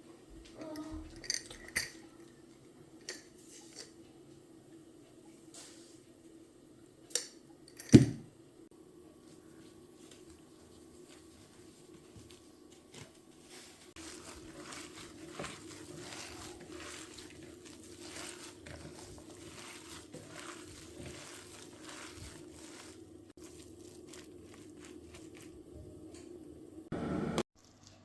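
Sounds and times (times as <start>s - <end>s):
rustling: 9.9s - 25.7s.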